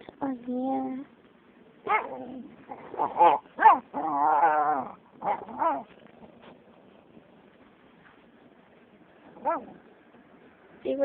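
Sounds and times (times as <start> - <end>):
dog whining and yelping: 1.8 - 5.9, 9.4 - 9.8.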